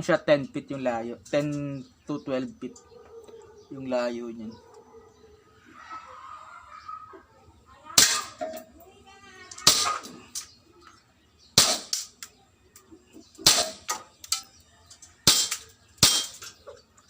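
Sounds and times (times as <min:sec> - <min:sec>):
pellets hitting targets: 0:08.0 - 0:08.7, 0:09.5 - 0:10.5, 0:11.5 - 0:12.3, 0:13.4 - 0:14.5, 0:15.2 - 0:16.6
airsoft pistol shots: 0:09.6 - 0:10.1, 0:11.6 - 0:12.2, 0:13.4 - 0:14.0, 0:15.2 - 0:16.4.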